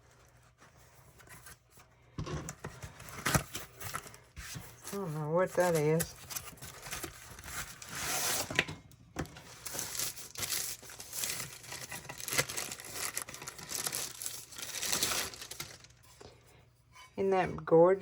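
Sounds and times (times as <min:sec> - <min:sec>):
packaging crinkling and tearing: 0:02.8 - 0:08.6, 0:09.2 - 0:16.2.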